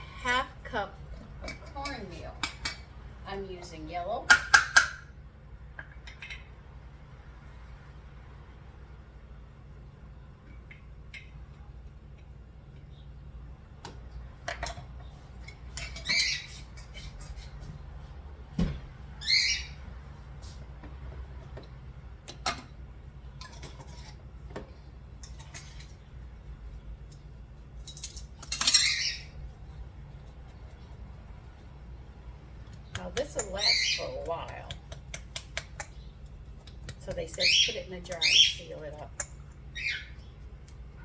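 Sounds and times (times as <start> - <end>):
utensils clinking against a bowl: 25.2 - 26.0, 27.1 - 29.3.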